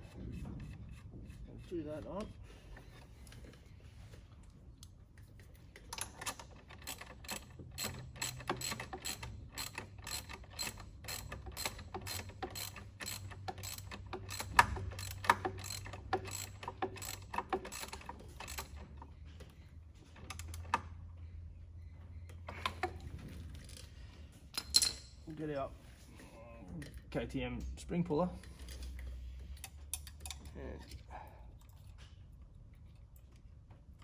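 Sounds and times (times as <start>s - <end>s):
socket ratchet clicking: 6.0s - 18.8s.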